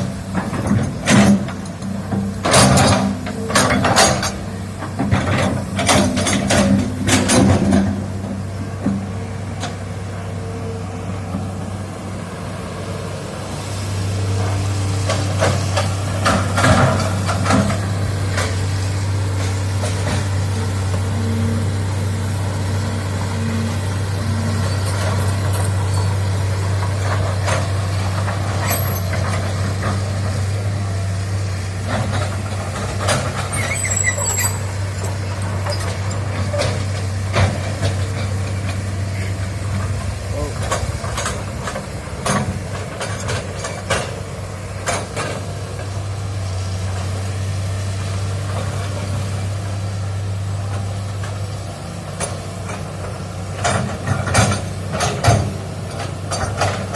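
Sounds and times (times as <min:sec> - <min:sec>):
excavator diesel engine running: 0:00.0 - 0:56.9
knocks and clanks: 0:00.3 - 0:08.1.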